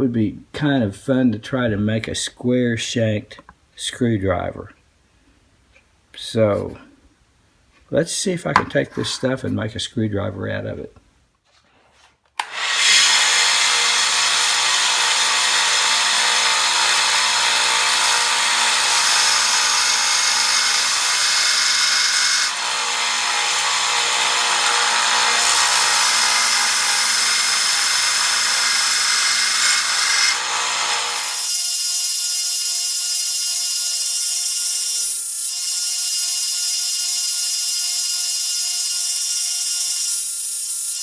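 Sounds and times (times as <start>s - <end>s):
electric power tool running: 12.4s - 32.7s.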